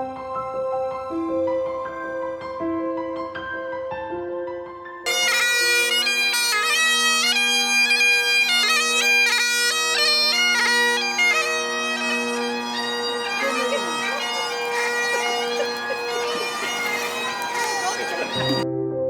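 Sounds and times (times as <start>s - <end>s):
bagpipes playing a tune: 5.1s - 18.6s.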